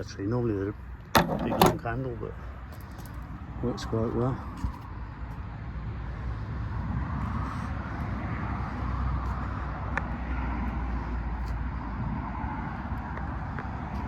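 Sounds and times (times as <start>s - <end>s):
road traffic rumble: 0.0s - 14.0s.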